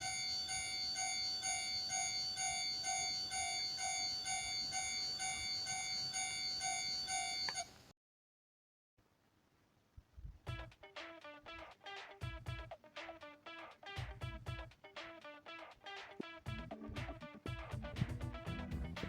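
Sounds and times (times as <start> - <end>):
level crossing warning bell: 0.0 - 7.7.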